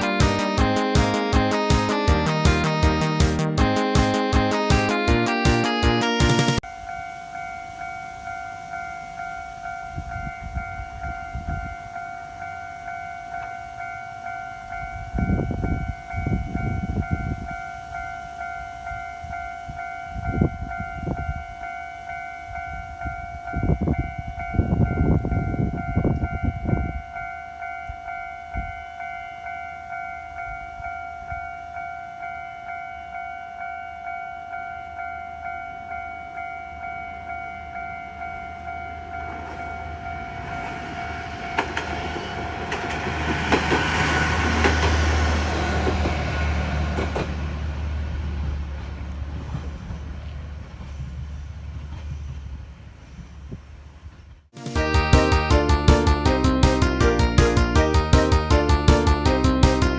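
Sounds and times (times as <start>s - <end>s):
level-crossing warning bell: 0.0s - 47.2s
train rumble and wheel clatter: 7.7s - 29.2s, 34.8s - 54.5s.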